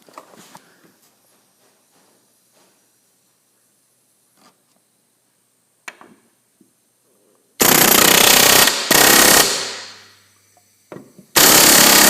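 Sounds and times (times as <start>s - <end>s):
pneumatic rivet hammer hammering: 7.6s - 10.1s, 10.9s - 12.0s.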